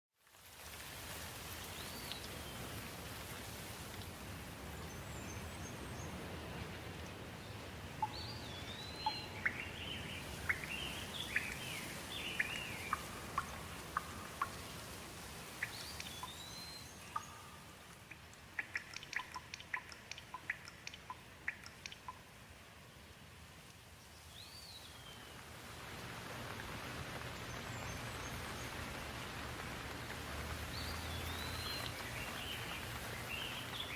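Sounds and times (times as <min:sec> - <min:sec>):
rain hiss: 0:00.2 - 0:33.9
water drips: 0:00.3 - 0:05.0, 0:07.8 - 0:23.0, 0:23.6 - 0:33.9
birds calling: 0:08.0 - 0:14.8, 0:15.5 - 0:22.2, 0:30.5 - 0:33.9.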